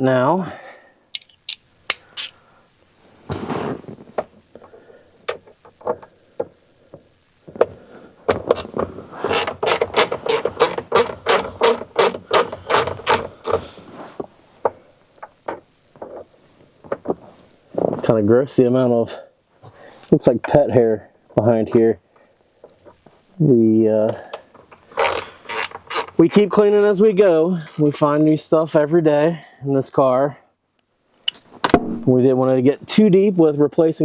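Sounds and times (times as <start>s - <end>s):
hand tool clicks and knocks: 1.2s - 2.4s, 8.3s - 13.6s
fast regular clicks: 8.3s - 13.7s, 24.5s - 26.4s.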